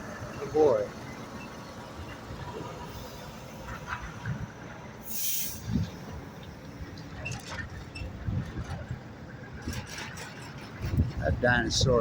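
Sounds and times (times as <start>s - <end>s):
short sharp hiss: 5.0s - 5.7s.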